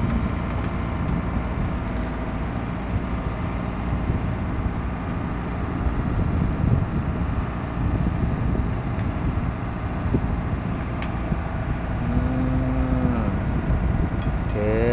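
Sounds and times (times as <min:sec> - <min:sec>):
diesel engine rumbling: 0:00.0 - 0:14.9
held pitched hum: 0:03.9 - 0:14.9.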